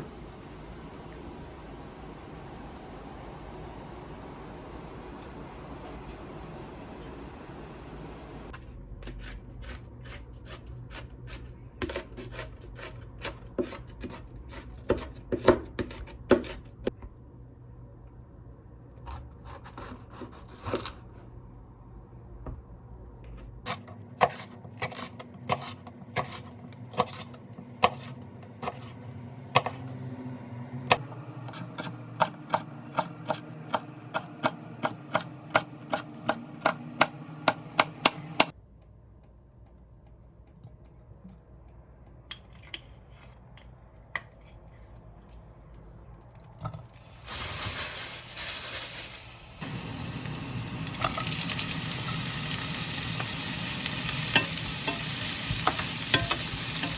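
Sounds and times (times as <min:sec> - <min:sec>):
knife chopping on cutting board: 0:14.8 - 0:16.6
food sizzling in frying pan: 0:46.9 - 0:56.9.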